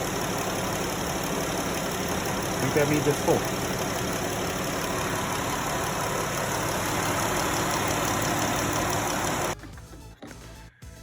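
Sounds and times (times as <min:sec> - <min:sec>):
car engine idling: 0:00.0 - 0:10.7.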